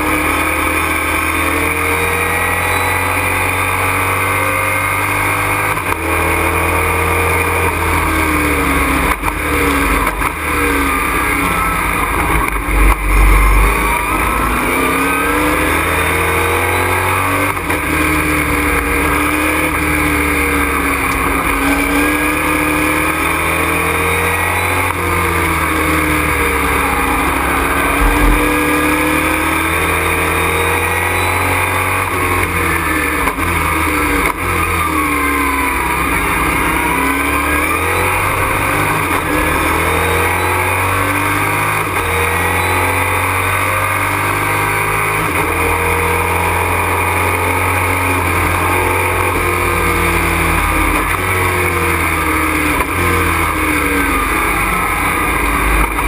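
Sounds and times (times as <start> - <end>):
race truck engine revving: 0.0 - 56.0
low thump: 12.4 - 14.4, 27.9 - 29.5.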